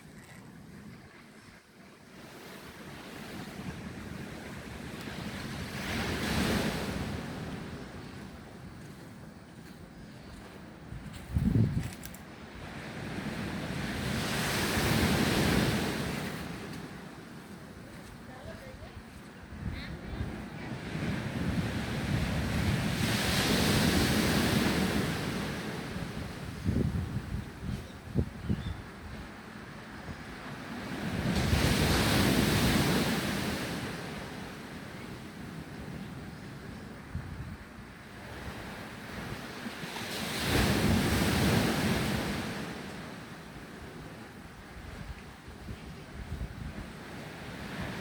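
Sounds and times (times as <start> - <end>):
ocean waves breaking: 0.0 - 10.9, 12.3 - 19.2, 19.9 - 27.6
wind on microphone: 0.0 - 34.5, 35.2 - 48.0.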